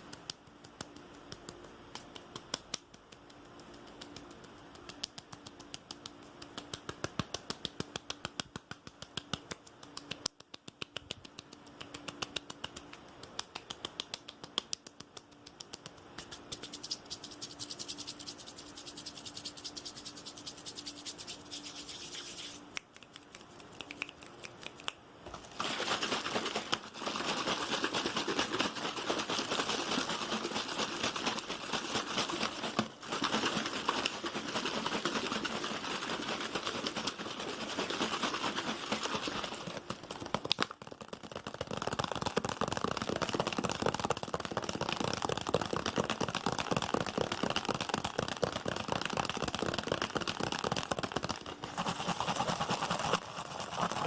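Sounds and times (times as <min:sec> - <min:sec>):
rapid sharp tapping: 0:00.0 - 0:24.8, 0:25.6 - 0:54.0
dense continuous scratching: 0:15.1 - 0:22.6, 0:25.5 - 0:40.3, 0:41.2 - 0:54.0.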